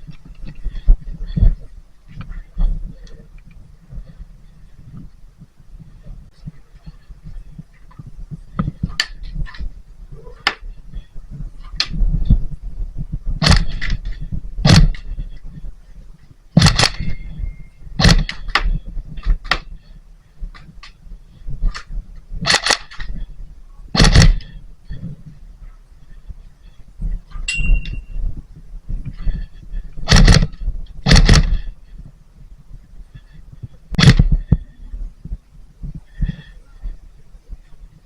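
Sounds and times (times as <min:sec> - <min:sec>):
low rumbling of handling: 0:00.0 - 0:38.0
airsoft gun shots: 0:13.4 - 0:13.8, 0:14.6 - 0:15.0, 0:16.6 - 0:17.0, 0:24.0 - 0:24.4, 0:30.1 - 0:30.4, 0:31.1 - 0:31.5.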